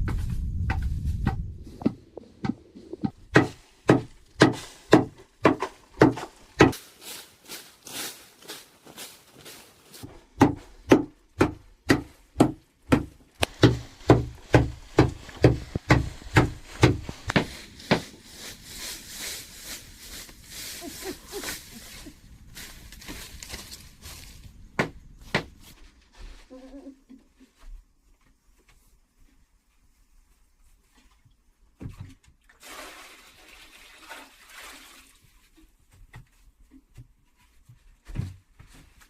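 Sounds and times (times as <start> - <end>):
hand tool chopping strikes: 3.3 - 6.8, 10.4 - 18.0.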